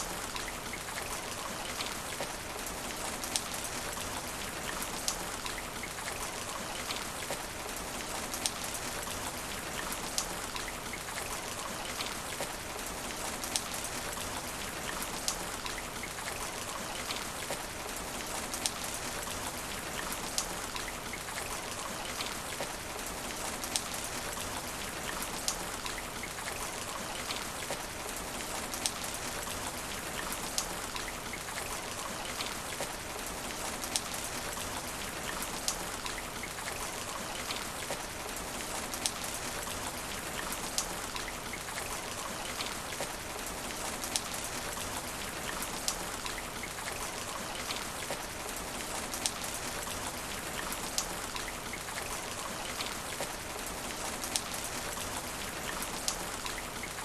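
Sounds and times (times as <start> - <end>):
rain on asphalt: 0.0 - 57.0.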